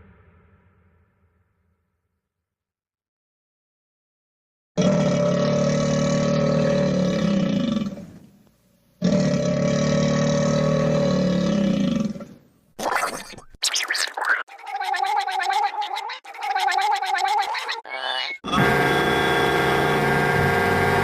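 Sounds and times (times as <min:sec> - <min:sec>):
cartoon roaring growl: 0:04.8 - 0:08.1, 0:09.0 - 0:12.4.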